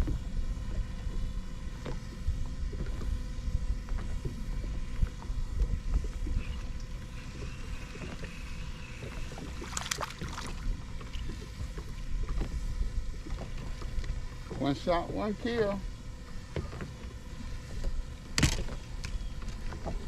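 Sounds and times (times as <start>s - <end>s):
wind rumbling on microphone: 0.0s - 14.7s.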